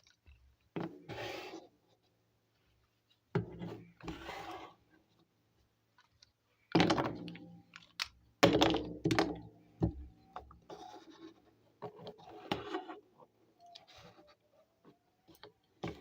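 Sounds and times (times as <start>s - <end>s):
plastic toy pieces knocking: 6.8s - 9.4s.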